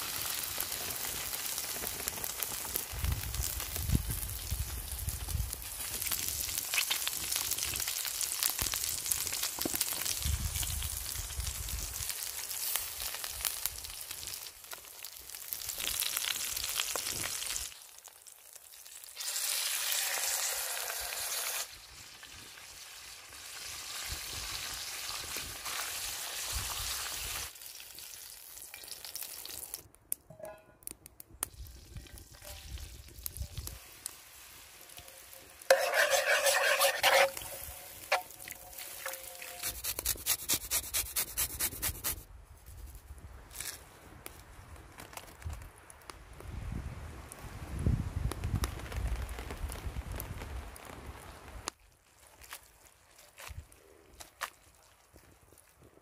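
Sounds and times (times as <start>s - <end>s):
food sizzling in a pan: 0.0s - 29.8s, 31.6s - 40.8s
stirring in a pan: 33.9s - 42.2s.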